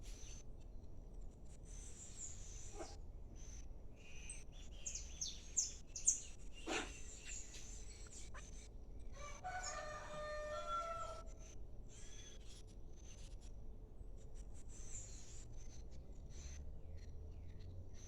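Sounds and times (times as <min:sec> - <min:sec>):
birds chirping: 0:04.2 - 0:08.6.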